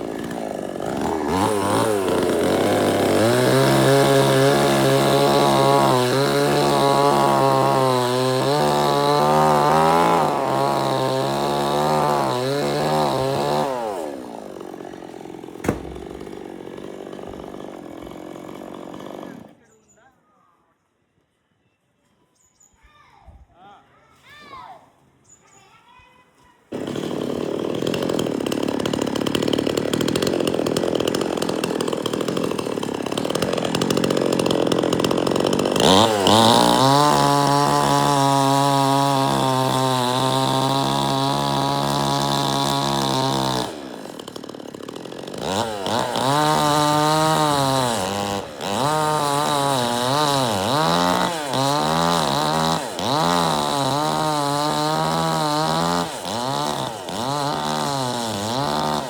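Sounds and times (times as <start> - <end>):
chainsaw revving: 0.0 - 19.6, 26.7 - 59.0.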